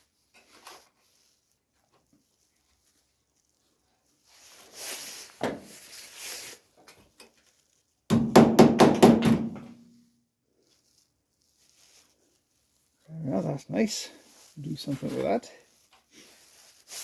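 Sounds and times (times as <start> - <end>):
hammer blows on sheet steel: 8.1 - 9.8.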